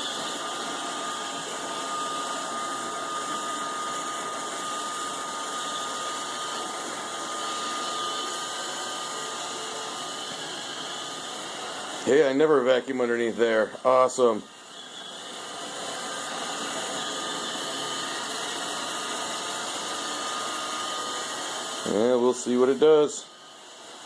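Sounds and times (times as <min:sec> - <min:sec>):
robot vacuum whirring: 0:00.0 - 0:12.4, 0:13.0 - 0:24.0
thin high whine: 0:12.0 - 0:15.6.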